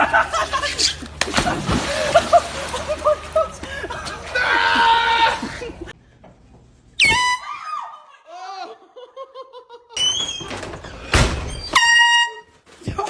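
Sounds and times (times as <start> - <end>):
people laughing: 0.0 - 6.0, 8.1 - 10.0.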